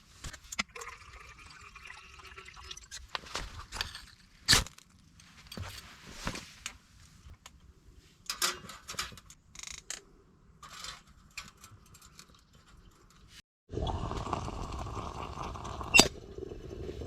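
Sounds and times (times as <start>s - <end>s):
clicks and rustles of handling: 3.0s - 13.4s.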